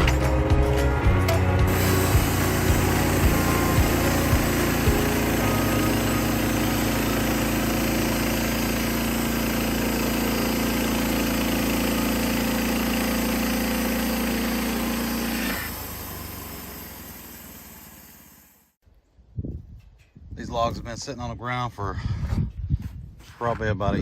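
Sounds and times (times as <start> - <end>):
gas engine running and winding down: 0.0 - 18.7.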